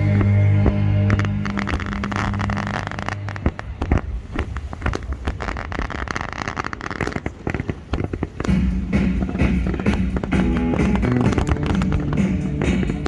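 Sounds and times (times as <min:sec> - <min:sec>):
music: 0:00.0 - 0:03.4, 0:08.4 - 0:13.0
fireworks bangs and crackles: 0:00.0 - 0:13.0.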